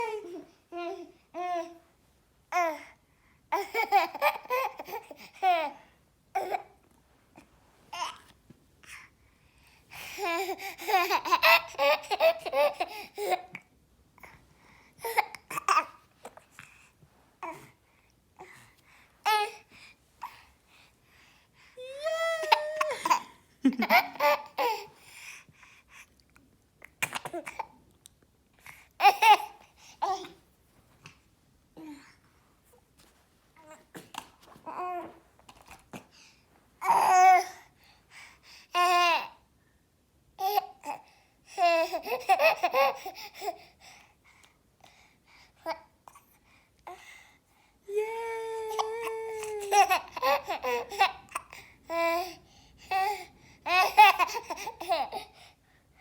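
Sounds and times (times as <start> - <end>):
child laughing and babbling: 0.0 - 1.7, 21.8 - 24.9, 47.9 - 52.3, 53.7 - 55.3
baby laughing and babbling: 0.0 - 1.8, 3.5 - 6.8, 10.0 - 14.3, 15.0 - 16.1, 21.6 - 25.0, 29.0 - 30.4, 38.8 - 39.4, 40.4 - 43.7, 47.8 - 55.4.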